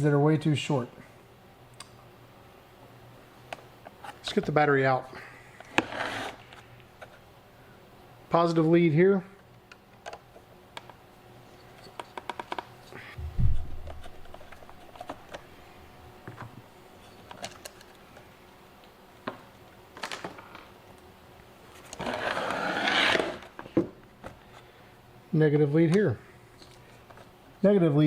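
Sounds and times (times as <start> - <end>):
rough scraping: 5.8 - 6.4, 22.0 - 23.5
dull thump: 13.2 - 14.0.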